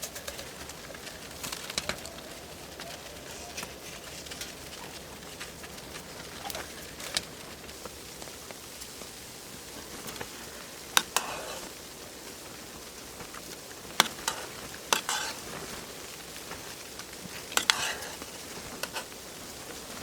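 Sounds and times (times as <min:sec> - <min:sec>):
food sizzling: 0:00.0 - 0:20.0
utensil clinking against cookware: 0:09.8 - 0:11.7, 0:13.9 - 0:15.8, 0:17.3 - 0:19.2.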